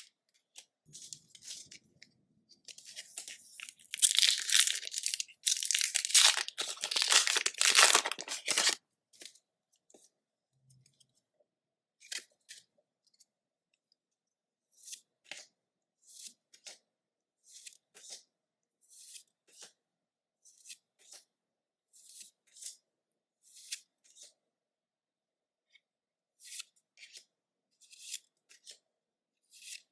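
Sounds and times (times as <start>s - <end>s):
foil wrapper crinkling: 3.6s - 8.8s.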